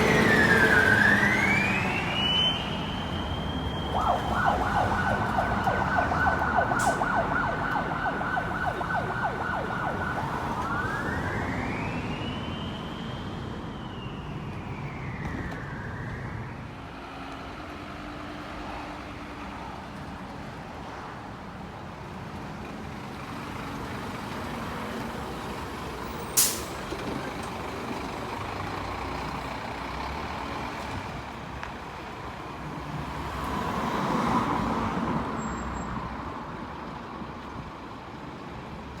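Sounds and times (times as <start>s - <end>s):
truck engine: 0.0s - 15.6s, 22.2s - 33.5s
fire engine siren: 0.0s - 17.2s
road noise: 0.0s - 39.0s.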